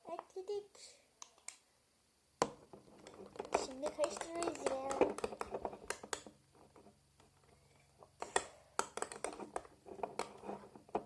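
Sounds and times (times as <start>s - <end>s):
stirrer clicking against container: 3.0s - 6.3s.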